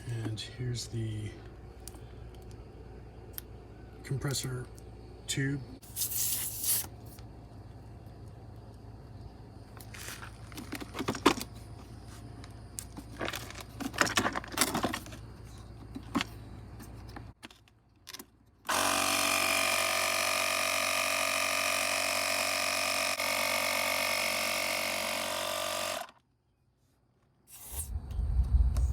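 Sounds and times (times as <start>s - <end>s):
air compressor running: 18.7s - 26.2s.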